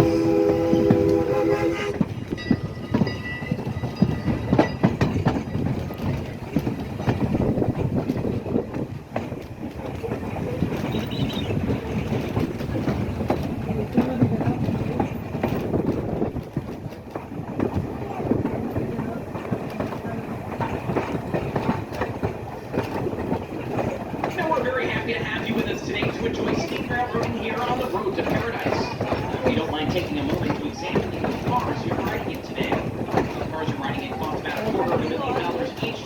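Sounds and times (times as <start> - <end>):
steam locomotive chime whistle: 0.0 - 4.9
train wheels clicking over rail joints: 0.0 - 36.0.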